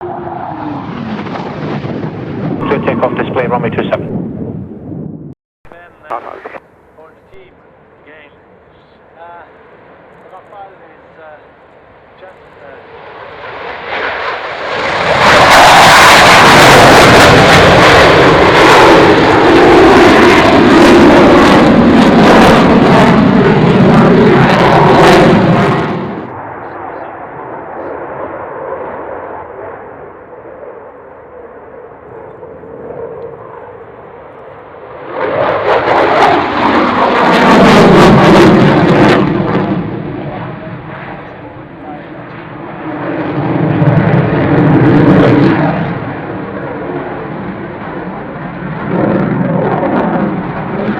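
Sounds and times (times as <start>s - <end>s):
jet engines roaring: 0.0s - 50.9s.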